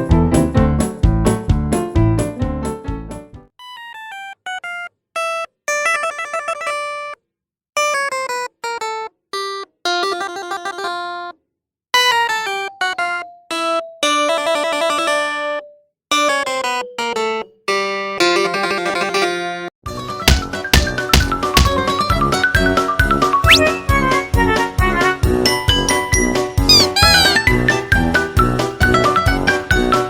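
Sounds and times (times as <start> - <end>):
plucky keyboard music: 26.7 - 30.0.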